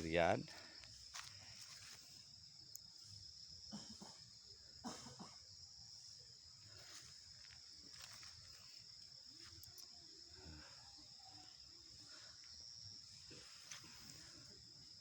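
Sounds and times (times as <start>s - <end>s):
soft footsteps on ground: 0.0s - 2.2s, 6.7s - 9.6s
crickets chirring: 0.0s - 15.0s.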